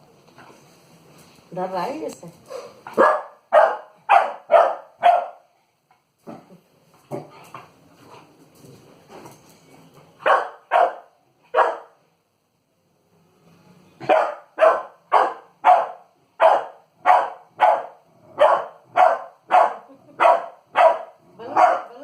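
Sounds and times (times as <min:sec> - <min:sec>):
puppy barking: 0:03.0 - 0:05.5, 0:10.2 - 0:12.0, 0:14.0 - 0:22.0.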